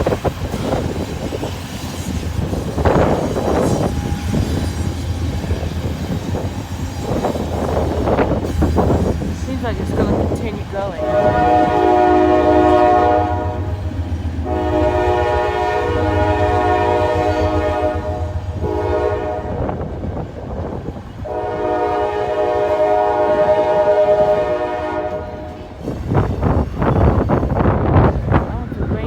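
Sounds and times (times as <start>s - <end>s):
low rumble of train: 0.0s - 29.0s
locomotive air horn blasts: 8.5s - 19.8s, 21.2s - 25.8s.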